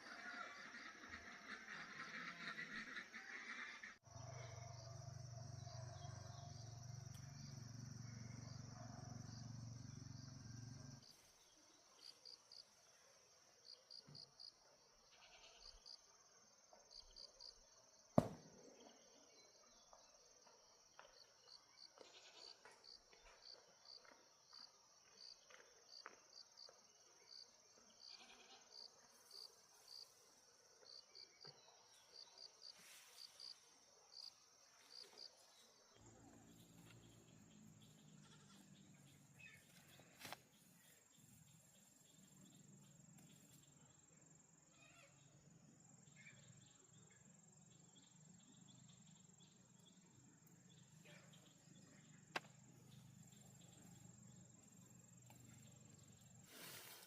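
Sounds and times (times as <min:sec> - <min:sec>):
insects chirping in pulses: 0:32.2 - 0:57.0.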